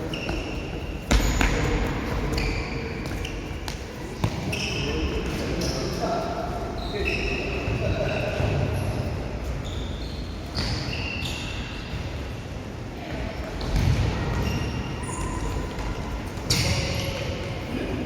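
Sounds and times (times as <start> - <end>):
shoe squeaks on court: 0.0 - 1.7, 2.3 - 6.0, 6.8 - 12.0, 16.5 - 17.4.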